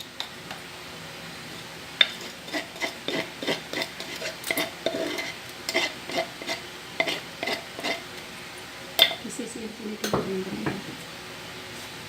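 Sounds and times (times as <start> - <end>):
utensil clinking against a dish: 2.0 - 8.0, 9.0 - 9.2.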